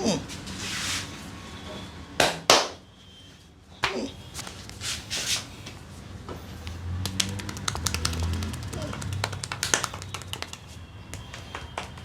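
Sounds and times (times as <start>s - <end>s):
hand slapping skin: 2.2s - 2.8s, 7.0s - 10.8s
hands rubbing skin: 7.0s - 10.8s.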